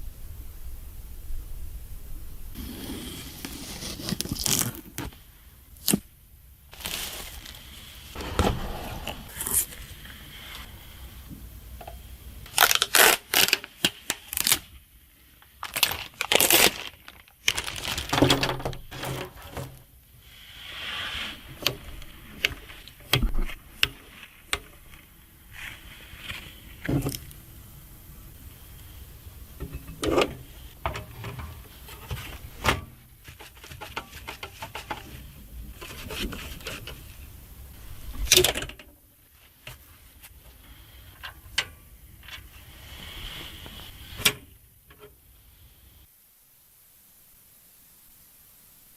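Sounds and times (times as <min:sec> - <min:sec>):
plastic and cardboard crinkling: 0:02.6 - 0:06.0, 0:06.7 - 0:08.2, 0:12.5 - 0:14.8, 0:15.4 - 0:19.8.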